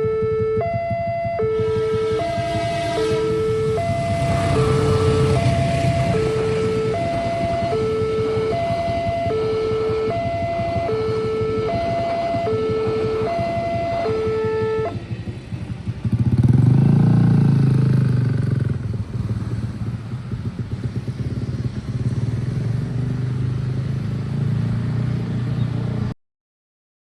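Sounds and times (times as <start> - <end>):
level crossing two-tone alarm: 0.0 - 15.0
motorcycle engines: 0.0 - 26.1
traffic rumble: 0.0 - 26.1.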